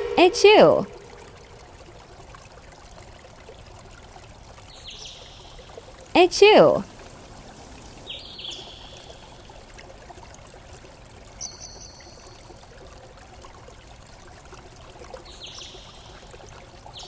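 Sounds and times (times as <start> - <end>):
steady hiss: 6.8 - 9.7.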